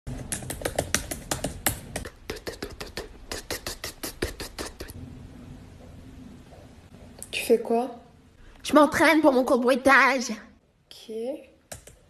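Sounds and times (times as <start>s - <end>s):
woman beatboxing clicks and pops: 0.3s - 5.0s.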